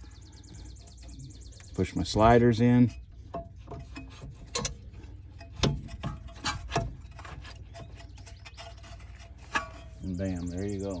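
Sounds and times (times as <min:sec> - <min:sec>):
sharp metallic clicks and knocks: 0:02.7 - 0:09.9.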